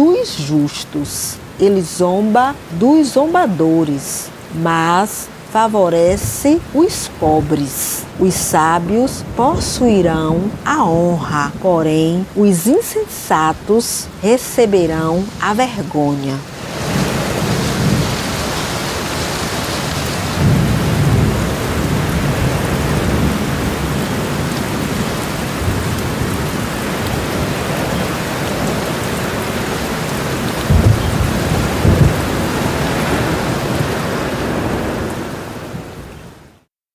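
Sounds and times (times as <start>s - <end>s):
heavy rain: 0.0s - 36.7s
low rolls of thunder: 16.8s - 27.8s, 30.6s - 35.2s.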